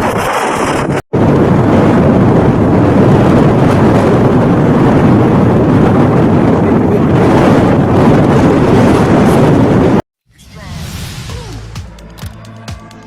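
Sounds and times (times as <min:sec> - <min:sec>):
strong wind buffeting microphone: 0:00.0 - 0:10.0.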